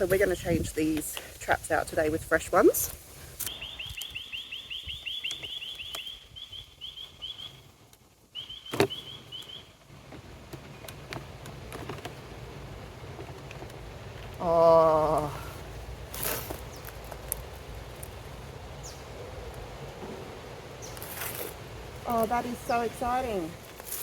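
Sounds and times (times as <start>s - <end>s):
bird chirping fast high chirps: 3.5s - 7.7s, 8.3s - 9.7s.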